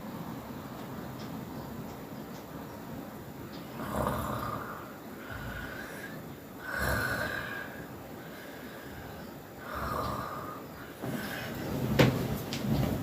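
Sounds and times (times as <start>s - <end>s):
quiet breathing: 3.6s - 13.0s
loud snoring: 3.8s - 7.9s, 9.6s - 11.7s.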